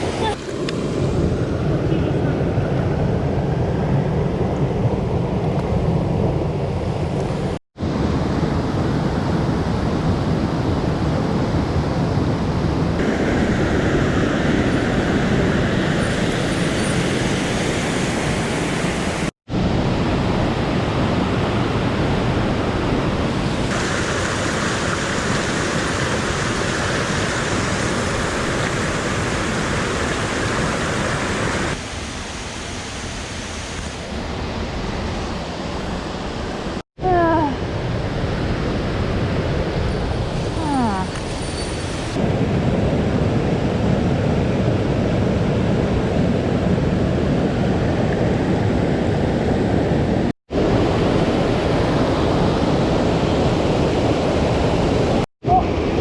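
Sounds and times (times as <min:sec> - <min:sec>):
mountain stream rushing: 0:00.0 - 0:03.2, 0:13.0 - 0:36.8.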